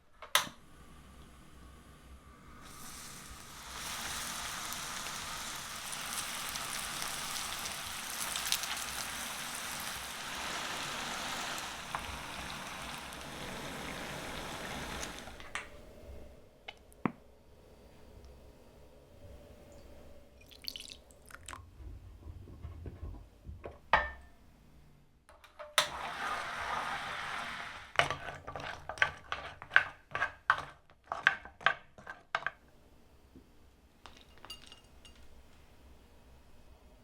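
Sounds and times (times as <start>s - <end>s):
pan hissing: 2.0s - 16.4s, 25.9s - 28.0s.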